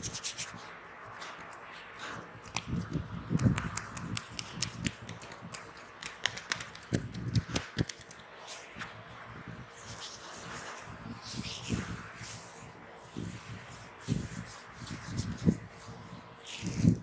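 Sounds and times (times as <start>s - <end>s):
taps and clicks on hair: 2.5s - 8.2s.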